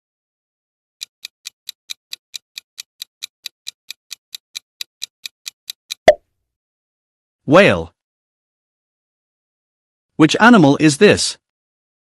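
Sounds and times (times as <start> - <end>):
fast clock ticking: 1.0 - 6.1.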